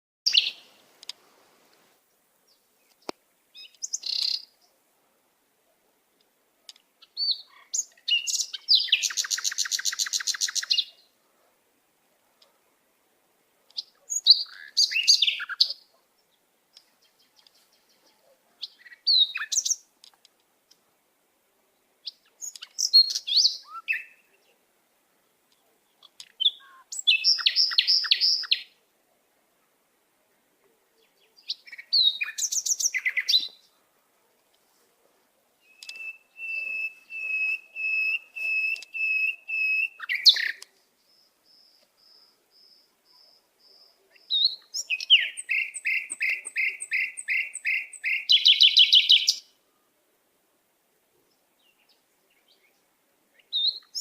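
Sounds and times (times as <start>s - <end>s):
songbird singing: 0.2s - 50.1s, 50.8s - 54.0s.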